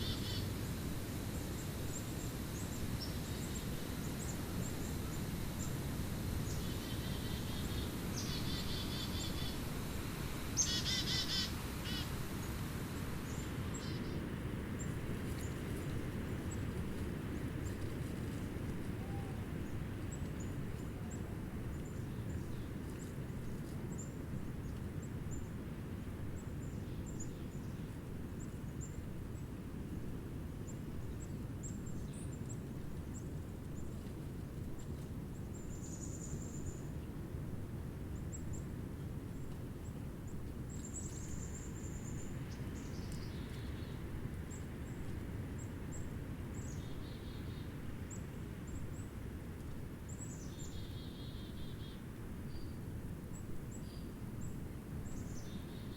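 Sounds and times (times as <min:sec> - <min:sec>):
chickadees calling: 0:00.0 - 0:00.5, 0:06.6 - 0:09.7, 0:10.6 - 0:12.2.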